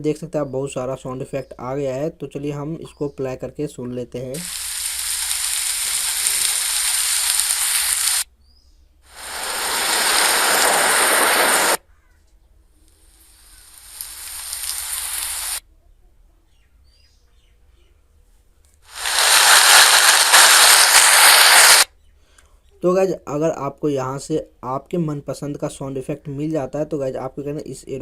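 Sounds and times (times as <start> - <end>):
steady rain hiss: 4.3 - 8.3, 9.1 - 11.8, 12.9 - 15.6, 18.8 - 21.9.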